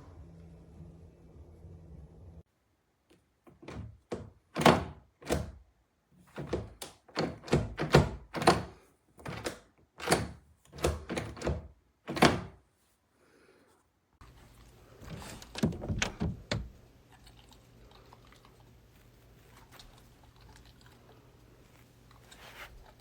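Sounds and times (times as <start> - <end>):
door handle and latch clicks: 6.4 - 12.5.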